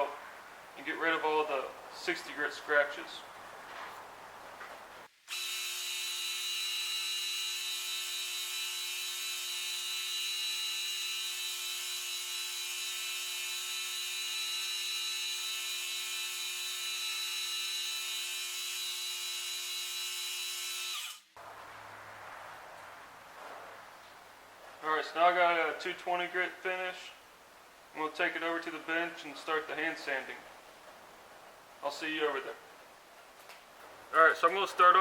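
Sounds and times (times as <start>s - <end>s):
belt grinder grinding steel: 5.3s - 21.3s.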